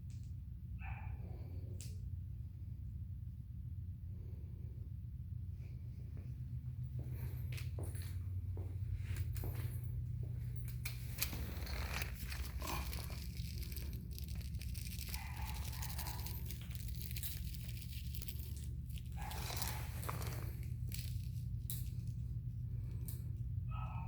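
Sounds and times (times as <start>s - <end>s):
steady low hum: 0.0s - 24.0s
kittens scratching and scrambling: 9.2s - 23.6s
toy rustling: 10.4s - 23.3s.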